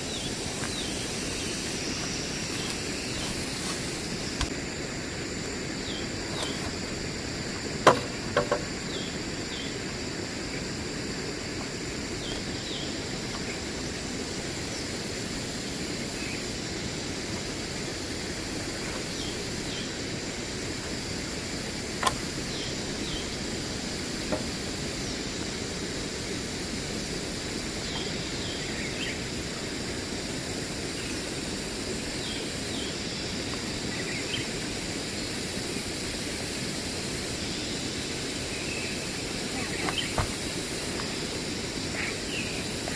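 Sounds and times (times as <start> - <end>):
high insect drone: 0.0 - 42.9
steady background hiss: 0.0 - 42.9
sharp knocks: 7.8 - 8.7.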